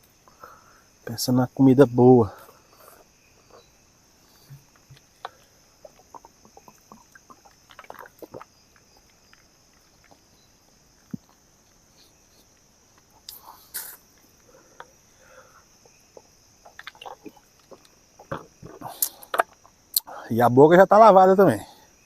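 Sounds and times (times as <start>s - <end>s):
night insects chirring: 0.0s - 22.0s.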